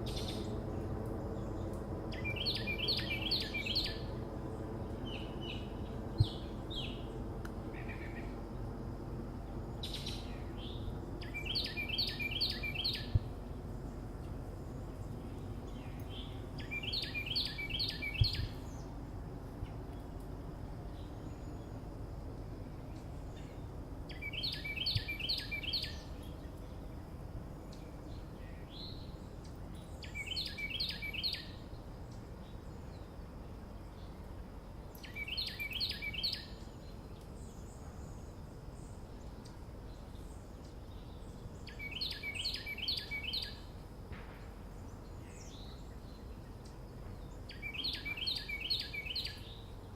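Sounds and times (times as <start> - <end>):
low background rumble: 0.0 - 49.9
songbird singing high notes: 2.1 - 4.2, 9.8 - 13.3, 15.8 - 18.8, 24.1 - 26.2, 35.0 - 36.6, 41.6 - 43.7, 47.5 - 49.7.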